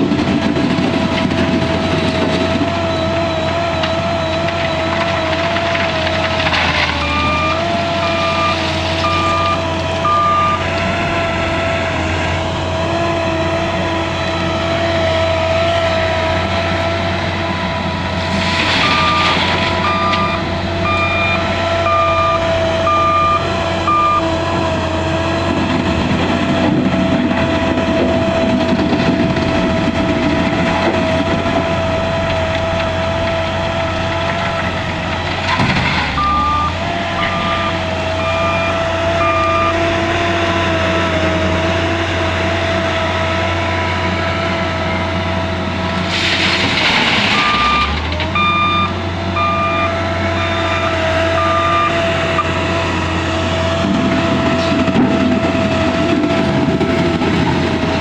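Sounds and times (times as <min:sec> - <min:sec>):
wheel loader engine running: 0:00.0 - 0:58.0
reversing alarm beeping: 0:00.8 - 0:16.8, 0:17.6 - 0:25.7, 0:36.1 - 0:40.6, 0:47.1 - 0:52.6.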